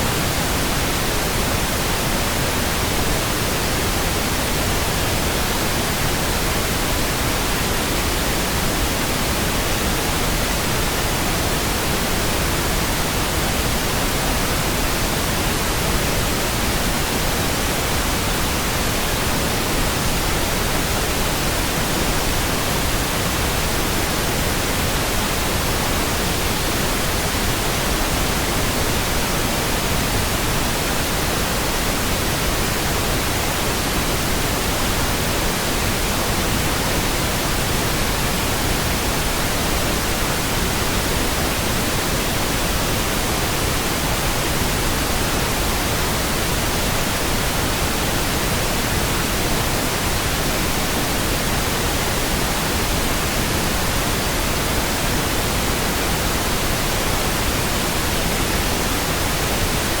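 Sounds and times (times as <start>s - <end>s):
pink noise hiss: 0.0s - 60.0s.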